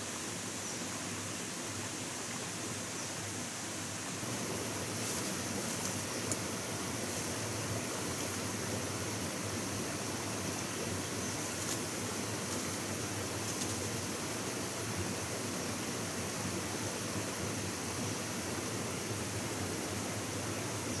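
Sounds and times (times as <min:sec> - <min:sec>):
running water rushing: 0:00.0 - 0:21.0
faint clicks: 0:05.8 - 0:06.5.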